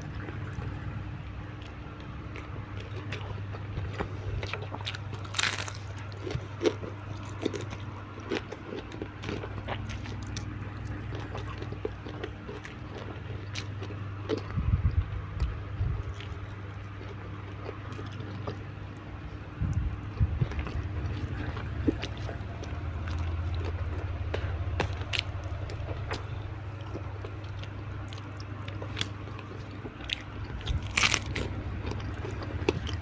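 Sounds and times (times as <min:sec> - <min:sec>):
steady low hum: 0:00.0 - 0:33.0
person chewing crunchy food: 0:01.5 - 0:19.0, 0:19.7 - 0:33.0
heavy low thumps: 0:19.6 - 0:20.8.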